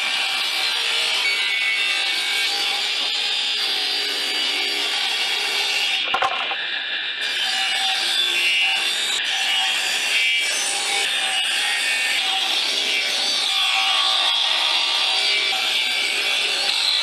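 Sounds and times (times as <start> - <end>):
table saw cutting wood: 0.0 - 17.0.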